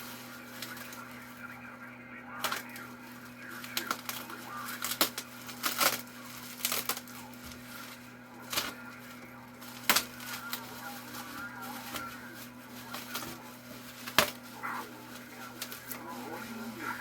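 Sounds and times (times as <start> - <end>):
low electrical hum: 0.0 - 17.0
bubble wrap crinkling: 2.4 - 17.0.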